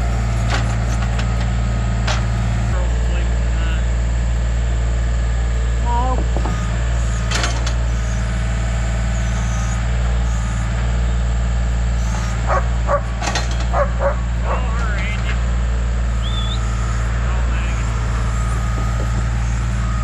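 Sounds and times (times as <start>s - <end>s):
diesel tractor engine idling: 0.0s - 20.0s
dog barking: 12.5s - 14.8s.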